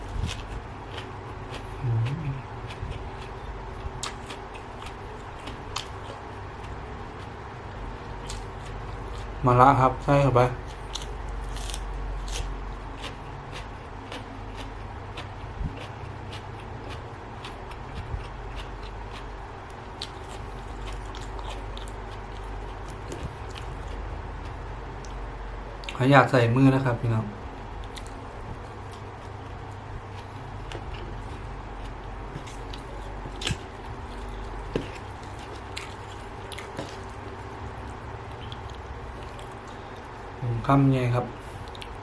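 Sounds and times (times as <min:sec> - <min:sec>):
short low hum: 0:00.0 - 0:04.0
person chewing: 0:00.0 - 0:07.5, 0:08.1 - 0:09.4, 0:10.6 - 0:25.2, 0:27.8 - 0:40.4, 0:41.4 - 0:42.0
steady low hum: 0:00.0 - 0:42.0.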